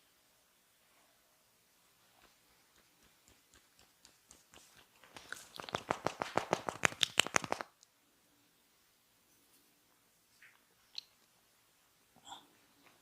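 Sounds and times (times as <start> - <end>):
hair crackling between fingers: 2.1 - 7.9.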